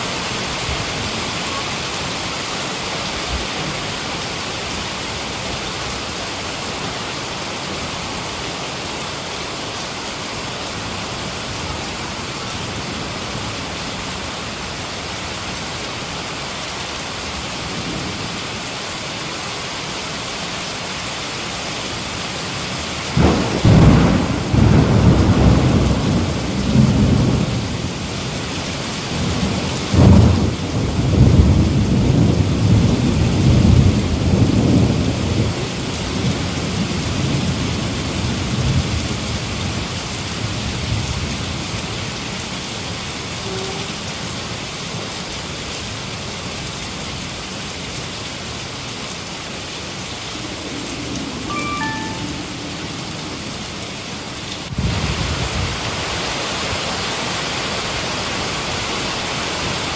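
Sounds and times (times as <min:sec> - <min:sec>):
heavy rain: 0:00.0 - 0:59.9
thunder clap and rumble: 0:23.1 - 0:28.2, 0:29.1 - 0:39.2.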